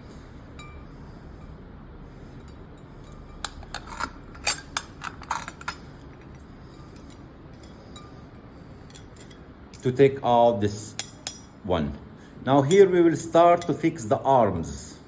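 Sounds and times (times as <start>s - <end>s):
metal and glass parts clinking: 2.4s - 8.2s, 8.8s - 10.0s.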